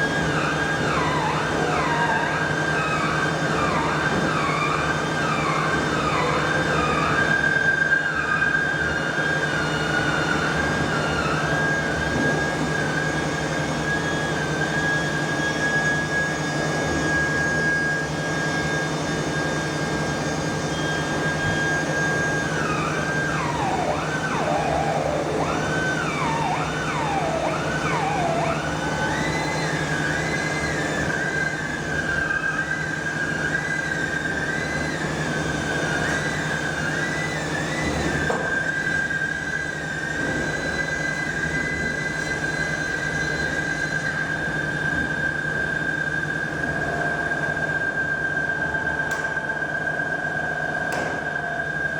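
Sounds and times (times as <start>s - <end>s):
high machine whine: 0.0s - 51.9s
machinery low hum: 18.3s - 38.6s.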